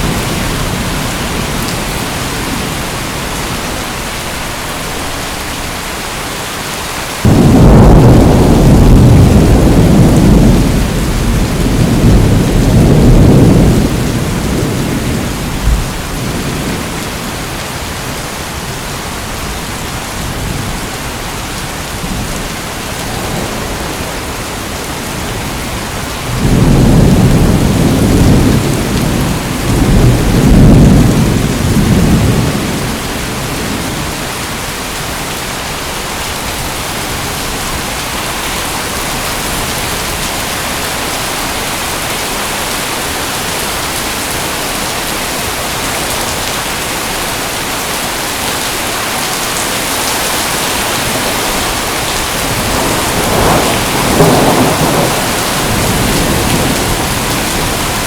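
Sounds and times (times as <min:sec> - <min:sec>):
heavy rain hissing: 0:00.0 - 0:58.0
low roll of thunder: 0:07.2 - 0:17.3, 0:22.0 - 0:34.2, 0:51.0 - 0:58.0.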